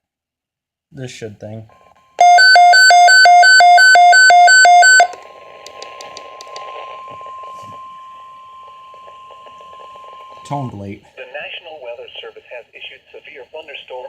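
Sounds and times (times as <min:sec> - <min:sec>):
faint steady alert tone: 0:02.2 - 0:05.2
two-pitch electronic alarm beep: 0:02.2 - 0:05.2.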